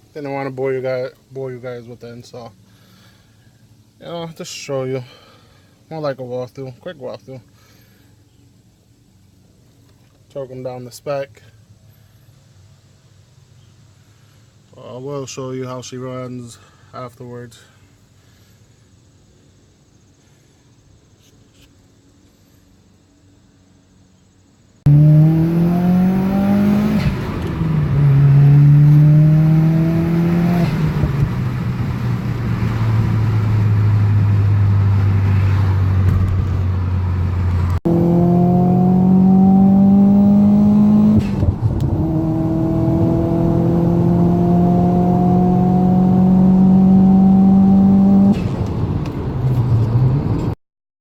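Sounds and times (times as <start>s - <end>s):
car engine accelerating: 24.9s - 50.6s.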